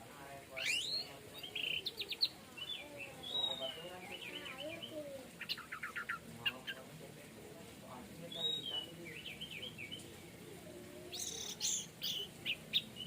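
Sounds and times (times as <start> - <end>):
sharp bird notes: 0.6 - 6.8.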